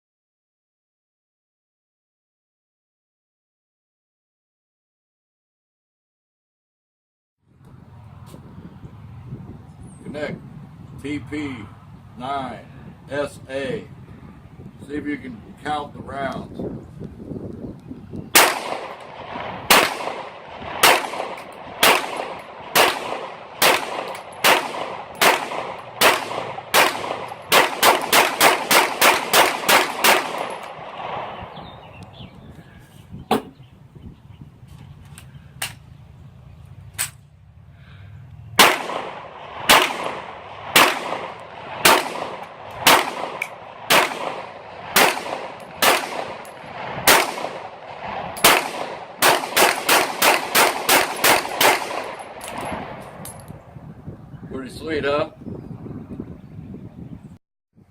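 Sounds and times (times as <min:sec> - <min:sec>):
pistol shots: 0:18.3 - 0:31.4, 0:38.6 - 0:53.2
distant gunshots: 0:18.3 - 0:31.5, 0:38.6 - 0:53.0.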